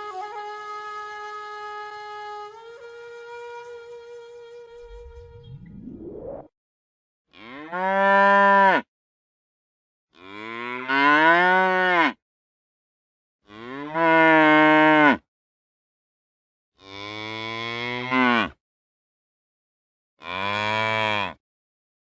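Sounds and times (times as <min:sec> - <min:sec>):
cow mooing: 0:07.3 - 0:08.8, 0:10.2 - 0:12.2, 0:13.5 - 0:15.2, 0:16.8 - 0:18.6, 0:20.2 - 0:21.4.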